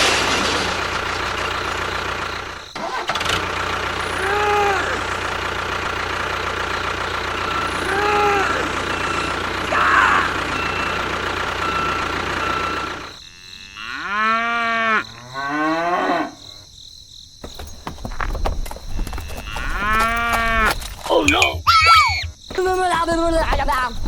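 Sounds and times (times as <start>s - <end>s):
small engine running: 0.0s - 13.2s
cow mooing: 13.3s - 16.6s, 19.2s - 20.7s.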